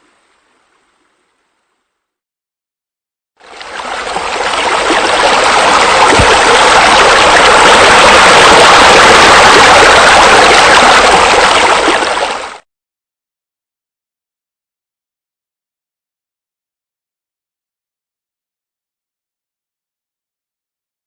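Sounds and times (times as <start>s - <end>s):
water splashing from fountains: 3.4s - 12.6s.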